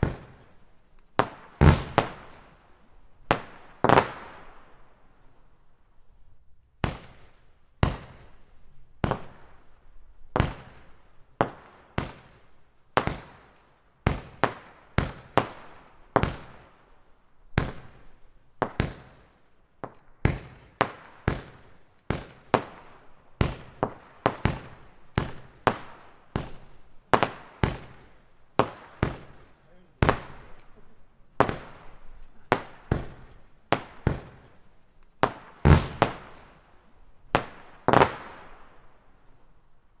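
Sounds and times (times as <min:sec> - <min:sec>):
fireworks cake reports: 0:28.6 - 0:34.7.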